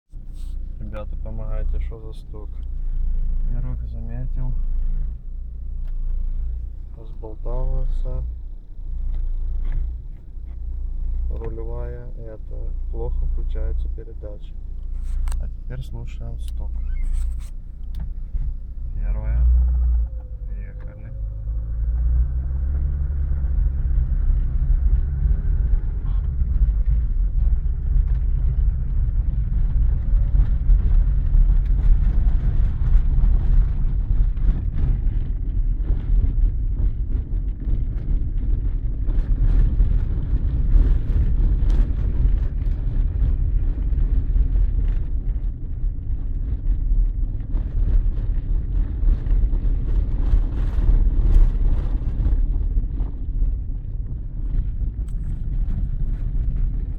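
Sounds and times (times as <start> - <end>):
car driving rumble: 0.1 - 56.9.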